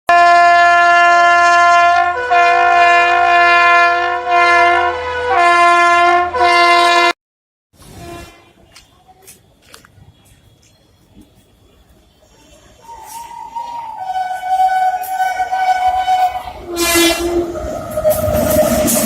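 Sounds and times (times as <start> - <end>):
locomotive twin-tone horn: 0.1 - 7.2, 7.8 - 8.6, 12.8 - 19.0.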